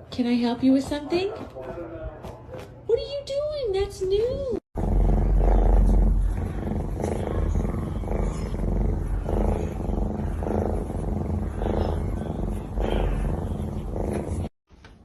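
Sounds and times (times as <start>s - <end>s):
cat purring: 4.8s - 14.6s.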